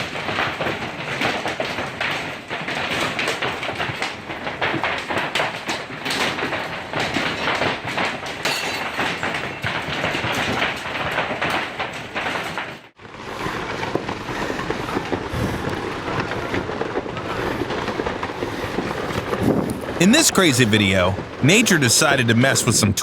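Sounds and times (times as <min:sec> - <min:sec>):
hailstones pelting hard surfaces: 0:00.0 - 0:23.0
crackling outdoor noise: 0:11.9 - 0:23.0.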